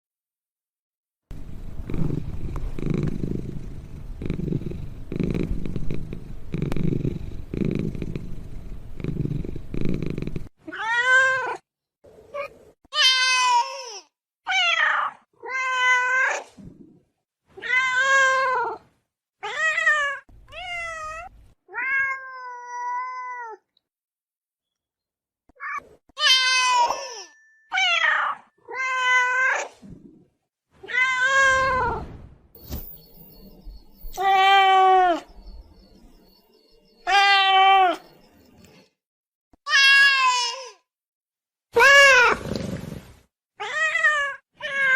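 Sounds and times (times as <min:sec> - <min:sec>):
ocelot rumbling: 0:01.3 - 0:10.5.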